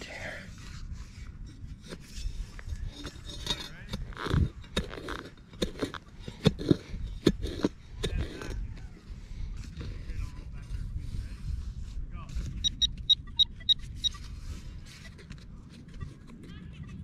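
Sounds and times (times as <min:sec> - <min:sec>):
digging tool knocking and scraping soil: 0:01.4 - 0:08.9.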